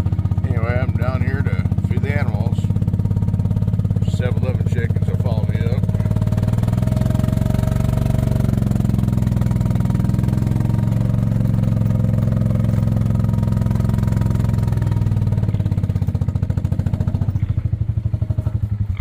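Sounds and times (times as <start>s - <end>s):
small engine droning: 0.0s - 19.0s.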